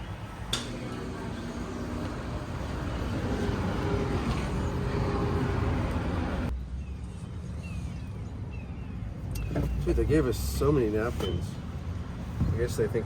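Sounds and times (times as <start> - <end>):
vehicle engine and road rumble: 0.0 - 13.0.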